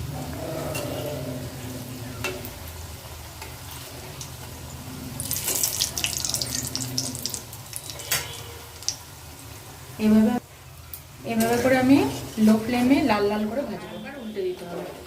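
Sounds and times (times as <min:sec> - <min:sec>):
food deep-frying in oil: 0:01.4 - 0:14.3.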